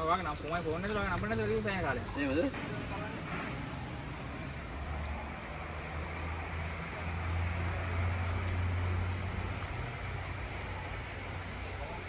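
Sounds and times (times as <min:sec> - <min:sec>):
engine running at low revs: 0:02.6 - 0:12.0.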